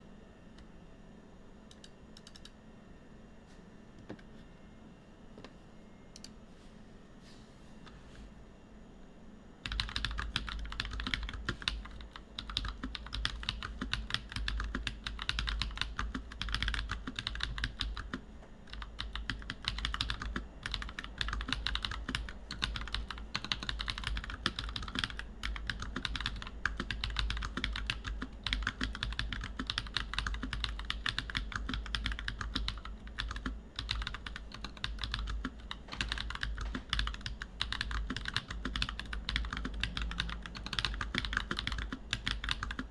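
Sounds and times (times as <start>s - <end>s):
fast mechanical keyboard typing: 9.6s - 42.9s.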